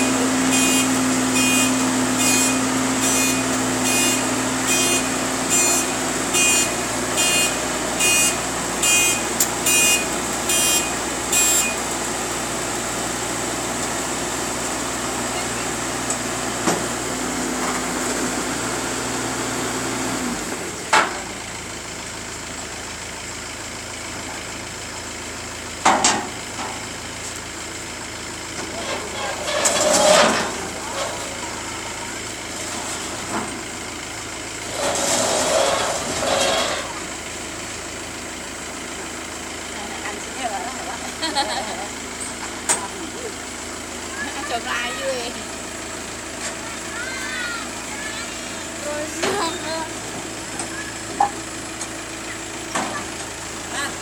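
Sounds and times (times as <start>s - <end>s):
reversing alarm beeping: 0.0s - 11.8s
engine running: 0.0s - 54.0s.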